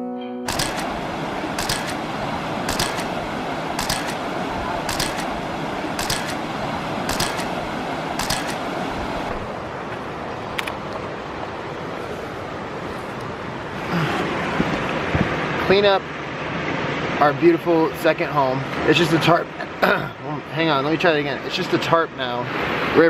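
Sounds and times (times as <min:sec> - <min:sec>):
camera shutter clicking: 0:00.5 - 0:00.9, 0:01.6 - 0:02.0, 0:02.7 - 0:03.2, 0:03.8 - 0:04.2, 0:04.9 - 0:05.3, 0:06.0 - 0:06.4, 0:07.1 - 0:07.6, 0:08.2 - 0:08.6
river water rushing: 0:00.5 - 0:19.8.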